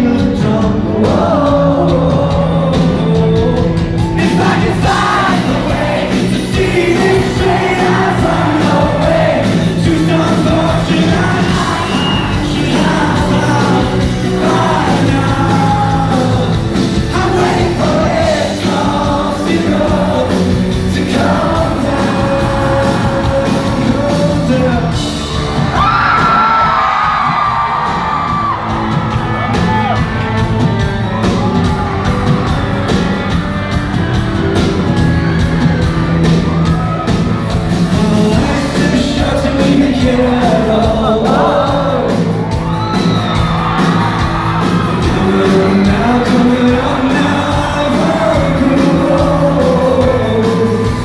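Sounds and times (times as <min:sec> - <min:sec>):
man singing: 0:00.0 - 0:26.9, 0:37.7 - 0:43.1, 0:45.0 - 0:51.0
live band playing: 0:00.0 - 0:51.0
audience yelling and whooping: 0:03.5 - 0:51.0.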